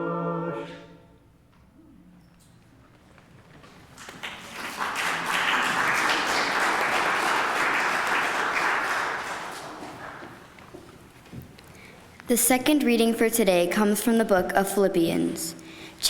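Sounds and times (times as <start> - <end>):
congregation applauding: 3.4 - 11.1.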